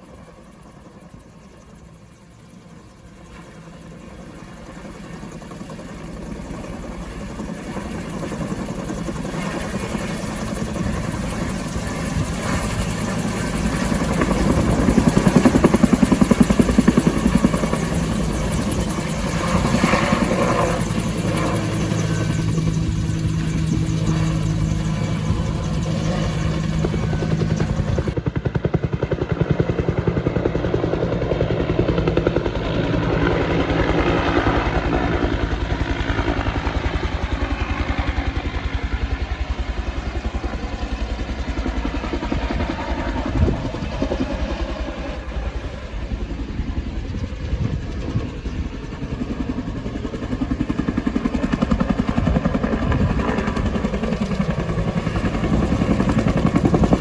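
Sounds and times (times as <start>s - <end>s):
turbine engine whine: 3.8s - 28.2s, 42.6s - 57.0s
helicopter rotor thudding: 6.0s - 28.2s.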